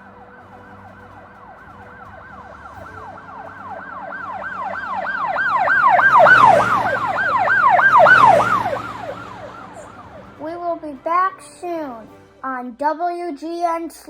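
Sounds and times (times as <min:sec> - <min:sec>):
siren yelping: 0:00.0 - 0:10.9.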